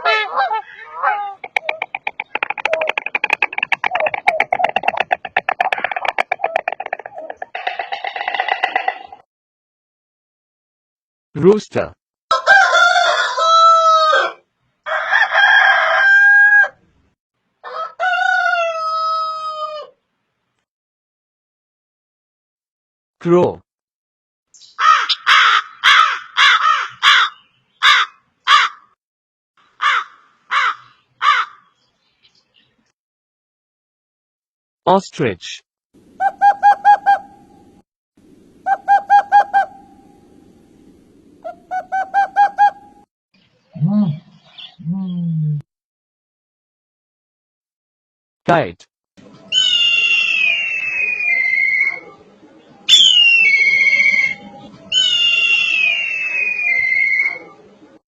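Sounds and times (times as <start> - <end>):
bird calling: 0.0 - 9.2, 24.6 - 28.8, 36.1 - 37.6, 38.6 - 40.2, 41.4 - 43.0, 52.9 - 57.4
rooster crowing: 12.3 - 16.8, 17.6 - 19.9.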